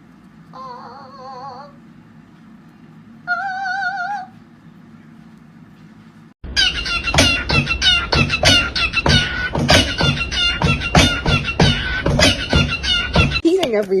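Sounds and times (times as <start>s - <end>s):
low steady hum: 0.0s - 14.0s
meow-like animal calls: 3.3s - 4.4s
music with a beat: 6.9s - 13.4s.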